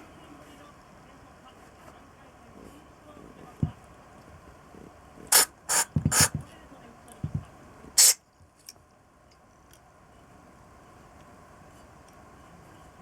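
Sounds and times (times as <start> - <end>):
hissing spray bursts: 5.3 - 6.4, 8.0 - 8.2.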